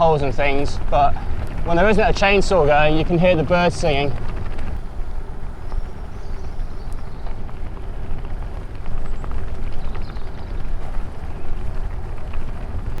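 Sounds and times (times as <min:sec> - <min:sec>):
bicycle tyres on rough road: 0:00.0 - 0:13.0
grit clicking under wheels: 0:00.0 - 0:13.0
wind on microphone: 0:00.0 - 0:13.0
faint birdsong: 0:04.7 - 0:13.0.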